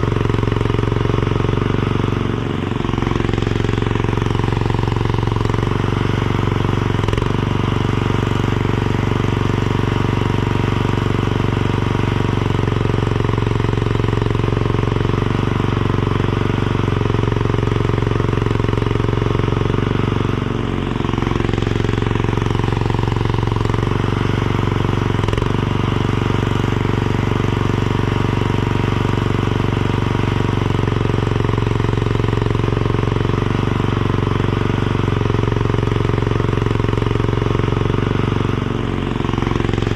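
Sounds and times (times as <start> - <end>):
skid steer engine running: 0.0 - 39.9.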